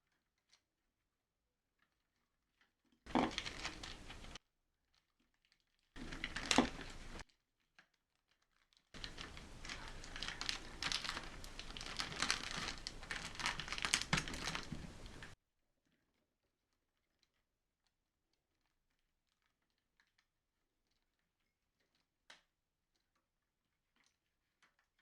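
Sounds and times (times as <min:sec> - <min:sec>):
crackling rustling handling noise: 0:03.1 - 0:04.4, 0:05.5 - 0:07.2, 0:09.0 - 0:15.4.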